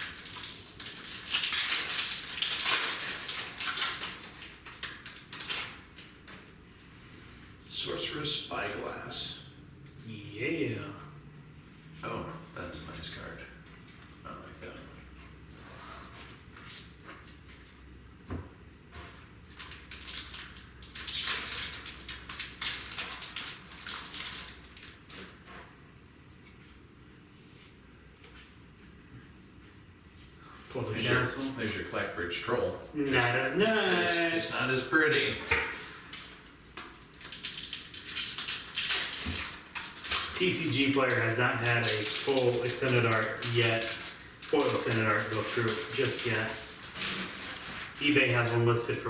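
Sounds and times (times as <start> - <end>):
wrappers and cards crinkling: 0.0 - 6.5, 19.5 - 25.4, 33.1 - 48.8.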